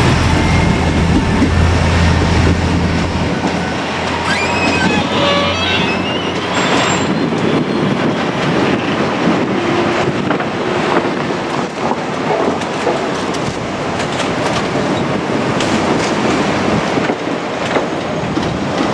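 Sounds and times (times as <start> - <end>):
rising squeal: 0.0 - 9.9
train wheels rumbling on rail: 0.0 - 18.9
clicks over rail joints: 9.3 - 18.9.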